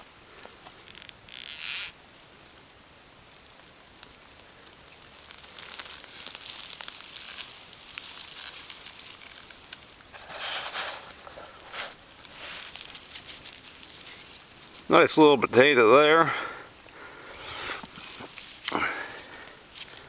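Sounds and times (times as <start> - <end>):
soil scraping and rustling: 4.0 - 20.0.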